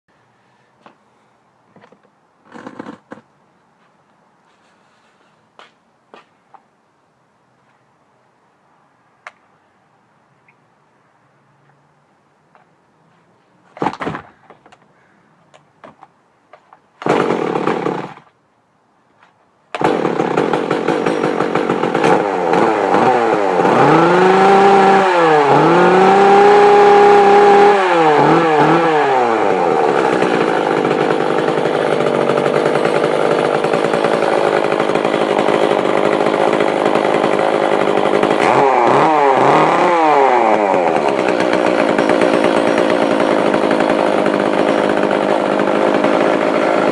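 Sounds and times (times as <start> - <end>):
chainsaw starting and revving: 2.5 - 3.2, 17.0 - 18.3, 19.8 - 46.9.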